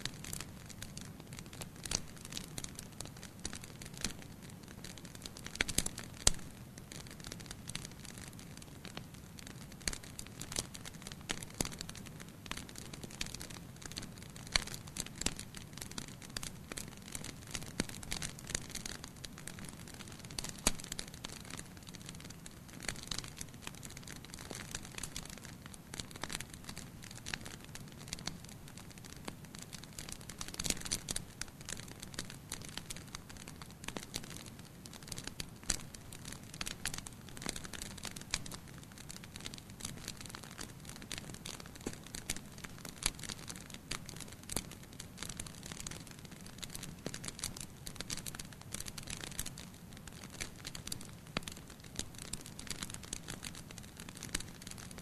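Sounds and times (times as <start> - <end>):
fire crackling in fireplace: 0.0 - 55.0
low rumble of burning: 0.0 - 55.0
sharp pops of burning wood: 35.0 - 46.0.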